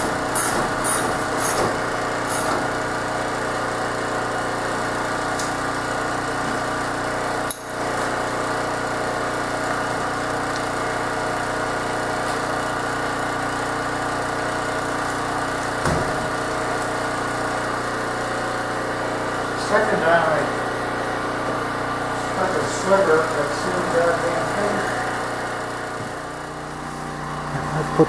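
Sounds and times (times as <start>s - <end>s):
machine drone: 8.7s - 28.0s.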